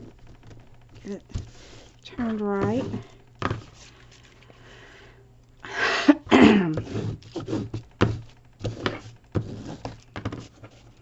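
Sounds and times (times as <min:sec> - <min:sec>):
woman sneezing: 0:06.0 - 0:06.8.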